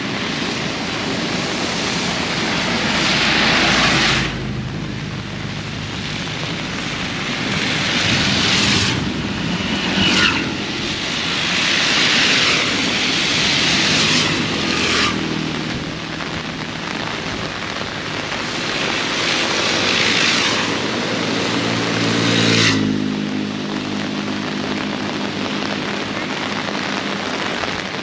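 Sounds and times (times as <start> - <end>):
heavy rain hissing: 0.0 - 28.0.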